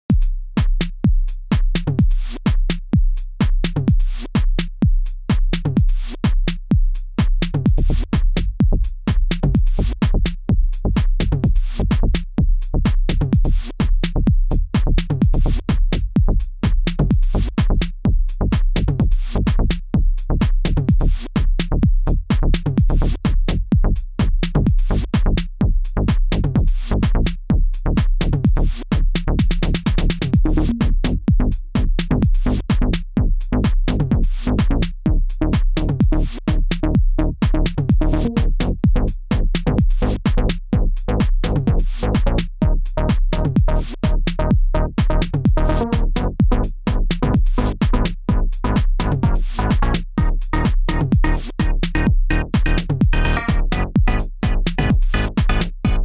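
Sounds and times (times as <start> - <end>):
heavy bass: 0.1 - 56.0
electronic dance music: 43.4 - 44.4, 45.0 - 46.2, 46.9 - 56.0.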